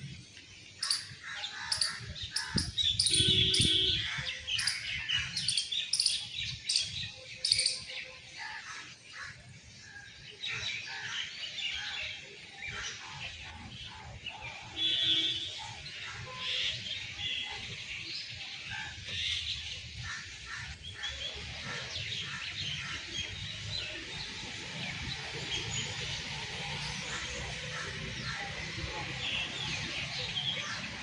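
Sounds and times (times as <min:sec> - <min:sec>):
wild birds chirping: 0:00.0 - 0:09.5.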